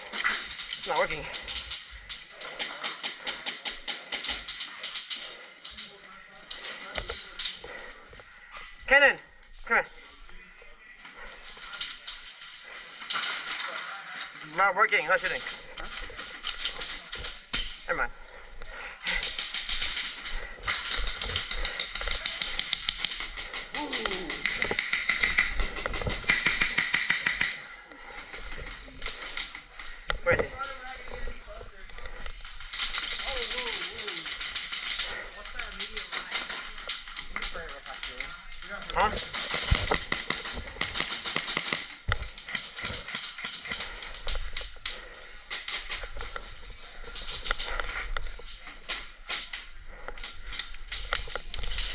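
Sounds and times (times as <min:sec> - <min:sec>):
airsoft guns firing: 0:19.1 - 0:27.6, 0:32.5 - 0:44.7.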